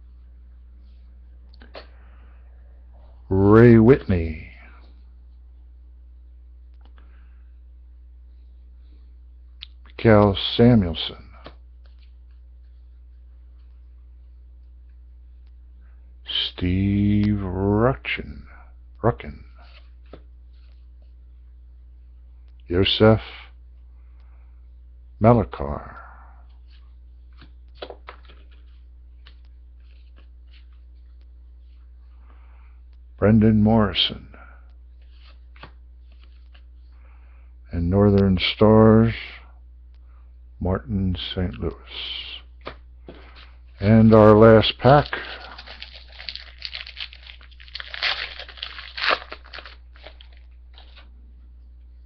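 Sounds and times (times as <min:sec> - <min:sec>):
low electrical hum: 0:00.0 - 0:52.0
wrapper tearing and crinkling: 0:44.8 - 0:51.0.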